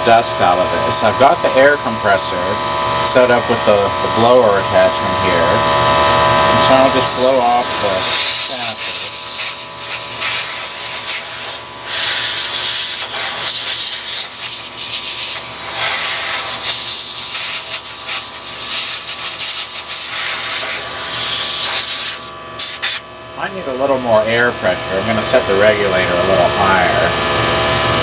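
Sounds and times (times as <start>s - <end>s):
air compressor hum: 0.0s - 28.0s
compressed air hissing: 6.7s - 23.0s.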